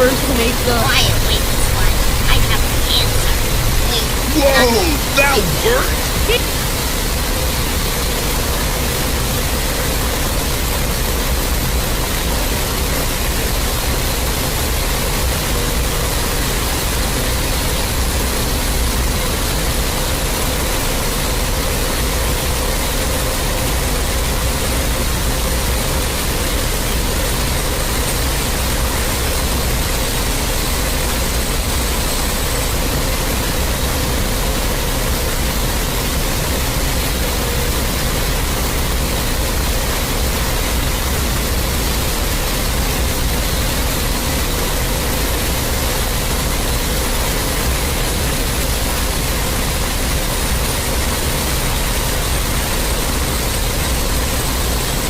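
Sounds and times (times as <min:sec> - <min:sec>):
loud static noise: 0:00.0 - 0:17.2.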